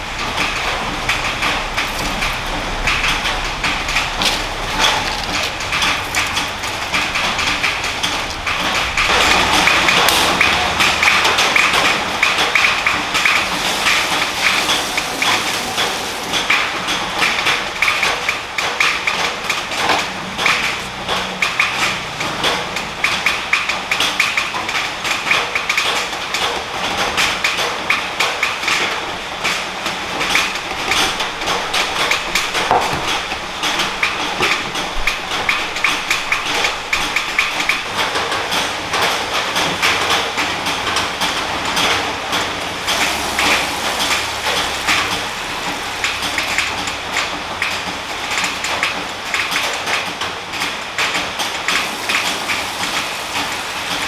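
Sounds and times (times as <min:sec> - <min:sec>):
dense clatter of small knocks: 0:28.8 - 0:39.0.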